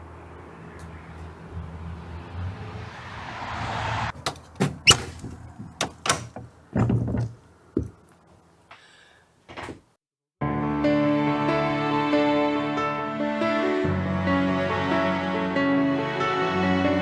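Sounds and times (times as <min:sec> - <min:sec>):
door latch clicks and knocks: 0:04.1 - 0:08.0.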